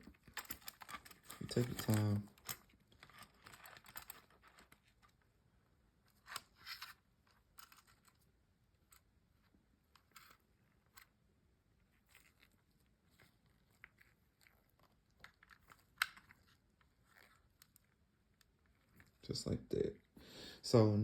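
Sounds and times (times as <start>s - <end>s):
small plastic parts clicking: 0.0s - 5.0s.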